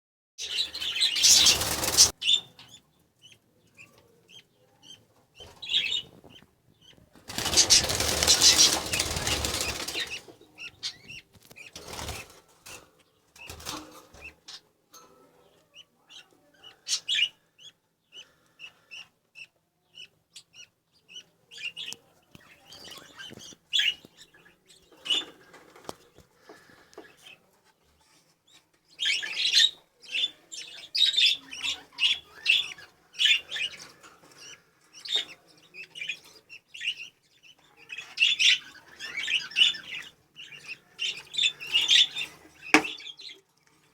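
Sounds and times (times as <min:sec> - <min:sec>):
birds flapping wings: 0:01.2 - 0:02.1, 0:07.2 - 0:10.2.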